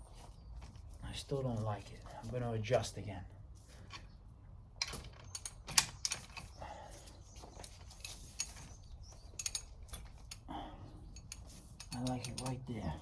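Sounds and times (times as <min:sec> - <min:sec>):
metallic clicks of pipe crimp tool: 0:11.2 - 0:12.6.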